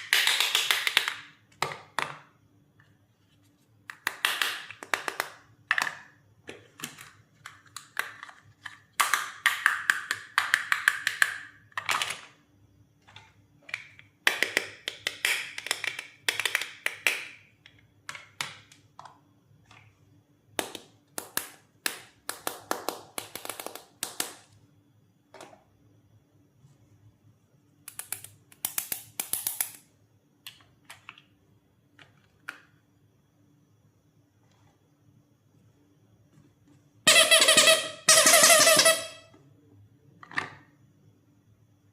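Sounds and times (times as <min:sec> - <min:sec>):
toy pieces clicking and clattering: 0:00.0 - 0:01.3.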